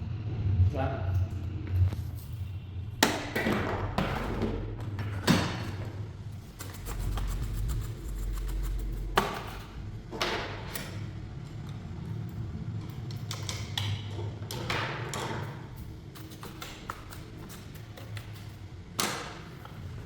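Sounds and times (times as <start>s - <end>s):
low hum: 0.0s - 13.4s.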